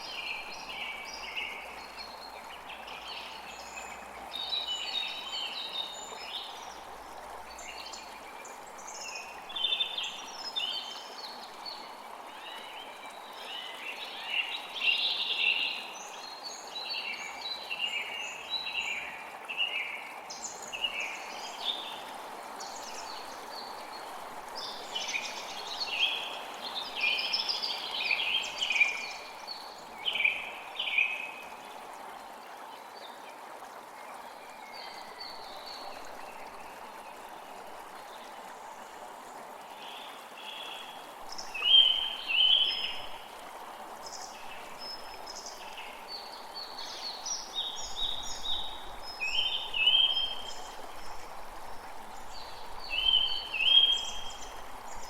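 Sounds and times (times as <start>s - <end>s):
creek water flowing: 0.0s - 55.0s.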